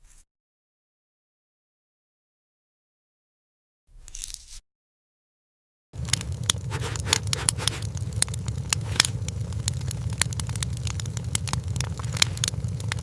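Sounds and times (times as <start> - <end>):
fire popping and snapping: 6.0 - 13.0
low rumble of burning fire: 6.0 - 13.0
wood fire crackling: 6.0 - 13.0.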